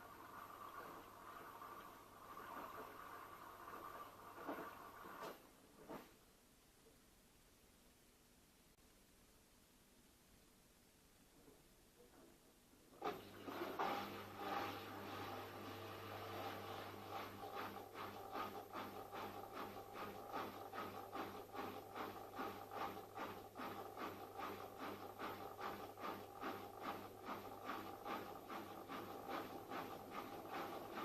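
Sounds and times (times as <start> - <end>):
washing machine running: 0.0 - 6.0, 12.9 - 31.0
pulsing vibration noise: 14.4 - 31.0.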